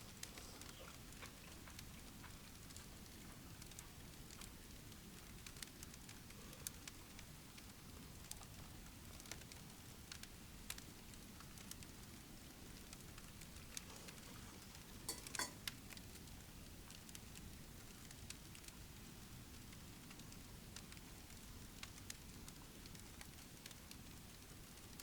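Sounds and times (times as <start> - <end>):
wood fire crackling: 0.0 - 25.0.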